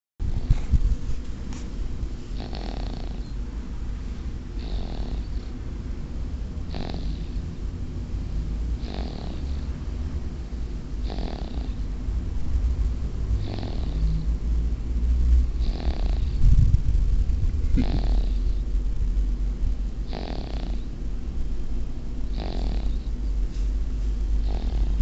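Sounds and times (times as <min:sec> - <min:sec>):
steady low rumble: 0:00.2 - 0:25.0
soft rasping snoring breaths: 0:02.3 - 0:03.4, 0:04.6 - 0:05.6, 0:06.7 - 0:07.5, 0:08.8 - 0:09.8, 0:11.0 - 0:11.9, 0:13.3 - 0:14.4, 0:15.5 - 0:16.7, 0:17.7 - 0:18.7, 0:20.0 - 0:20.9, 0:22.3 - 0:23.2, 0:24.4 - 0:25.0.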